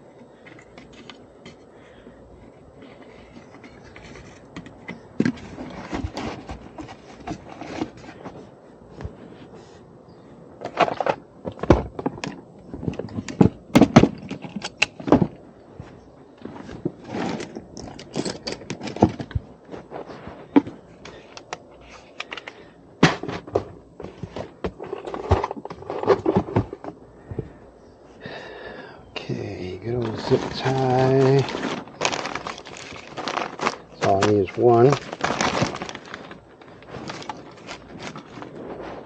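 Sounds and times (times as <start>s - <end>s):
tools knocking and rattling: 16.8s - 19.4s.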